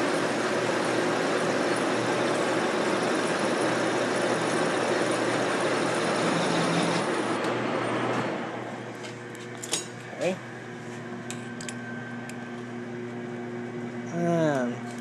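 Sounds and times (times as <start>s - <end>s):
lathe running with hum: 0.0s - 9.1s.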